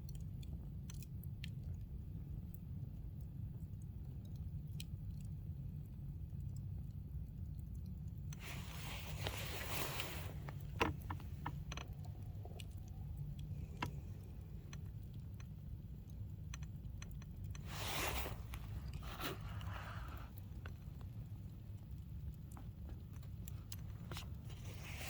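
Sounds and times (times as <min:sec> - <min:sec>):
low steady rumble: 0:00.0 - 0:25.0
campfire crackling: 0:00.2 - 0:25.0
fire hissing: 0:17.6 - 0:20.6.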